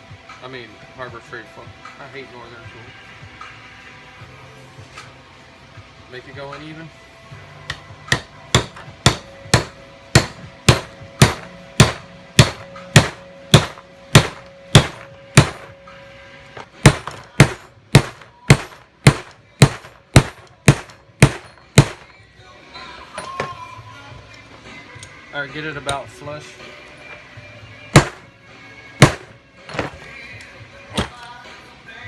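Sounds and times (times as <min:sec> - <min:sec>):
hammer striking metal: 0:07.6 - 0:22.2, 0:27.9 - 0:28.3, 0:29.0 - 0:30.0.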